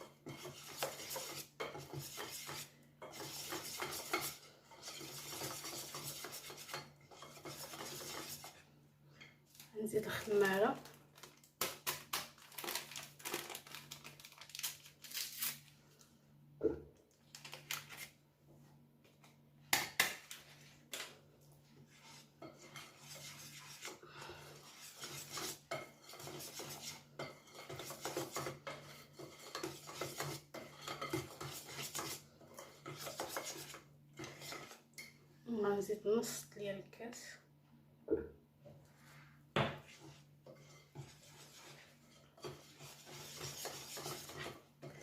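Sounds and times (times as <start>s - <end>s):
utensil scraping a mixing bowl: 0.0s - 8.7s, 21.8s - 35.1s, 39.8s - 45.0s.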